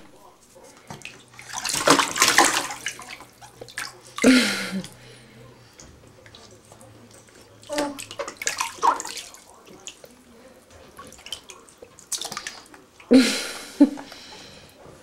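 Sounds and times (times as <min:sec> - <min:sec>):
water dripping in bathtub: 0:00.9 - 0:05.0, 0:05.8 - 0:10.2, 0:10.9 - 0:13.2
water splash: 0:01.0 - 0:04.4, 0:07.7 - 0:10.0.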